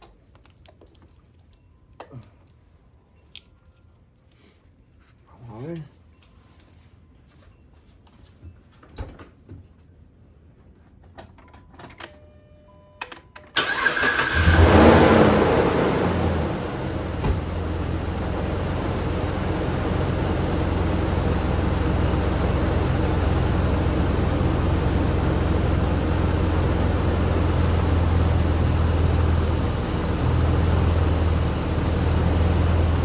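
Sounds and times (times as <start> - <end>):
car engine idling: 13.6 - 33.0.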